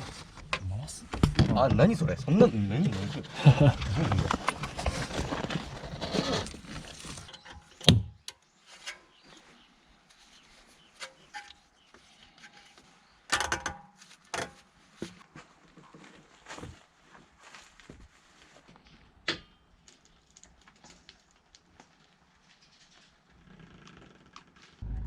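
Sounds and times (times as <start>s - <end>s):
scraping and rubbing: 2.6s - 7.3s.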